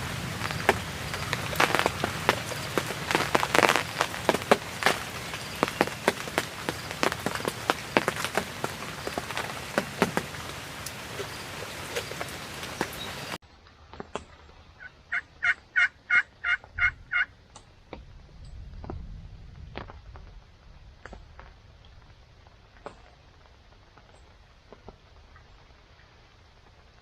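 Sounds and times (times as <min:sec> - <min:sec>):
rain pattering: 0:00.0 - 0:27.0
turkey gobbling: 0:14.8 - 0:17.3.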